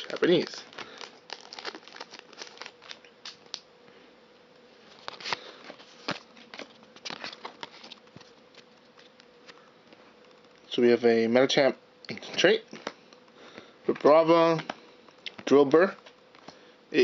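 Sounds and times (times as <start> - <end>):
foil pack crinkling: 0.0 - 3.7, 4.8 - 9.6
faint steady hum: 0.0 - 17.0.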